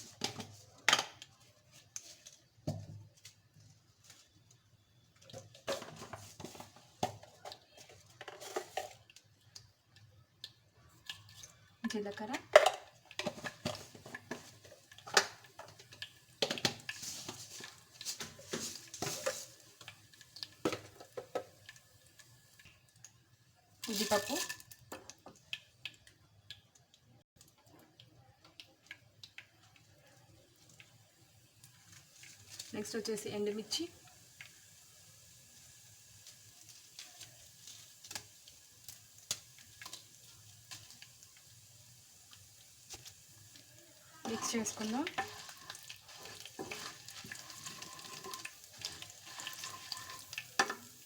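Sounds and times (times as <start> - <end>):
seeds spluttering in hot oil: 0.0 - 51.0
pops and crackles: 5.2 - 21.8.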